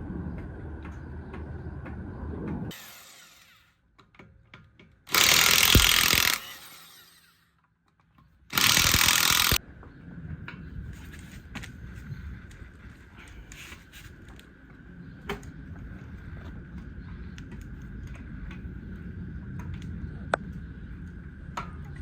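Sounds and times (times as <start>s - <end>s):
low rumbling: 0.0s - 2.8s
handheld power tool running: 2.7s - 3.6s, 5.1s - 7.4s, 8.5s - 9.6s.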